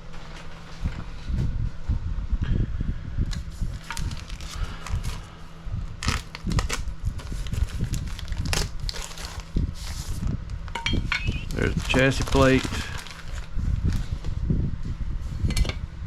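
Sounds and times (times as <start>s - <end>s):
plastic bags crinkling: 3.7s - 5.3s, 6.0s - 10.3s, 11.4s - 14.0s
plastic parts handled and set down: 10.7s - 13.5s.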